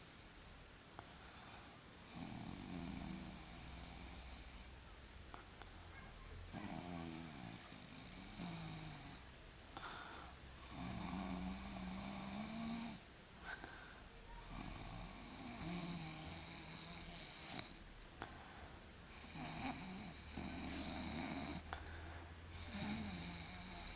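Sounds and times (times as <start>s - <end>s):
person snoring: 2.1s - 4.7s, 6.6s - 9.2s, 10.6s - 13.0s, 14.4s - 18.4s, 19.1s - 23.9s.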